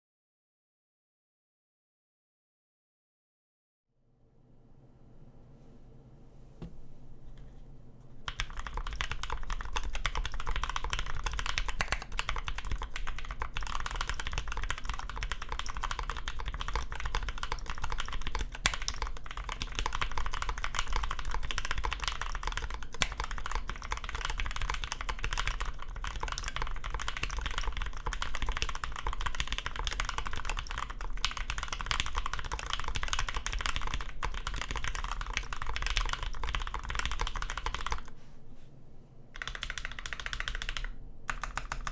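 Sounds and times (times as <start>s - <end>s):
fast typing on mechanical keyboard: 8.2s - 38.1s, 39.4s - 41.9s.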